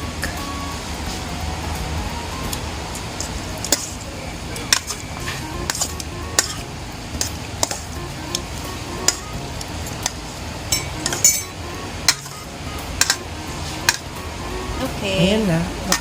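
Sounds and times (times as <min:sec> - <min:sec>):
background music: 0:00.0 - 0:16.0
spoon clinking against bowl: 0:10.0 - 0:13.2.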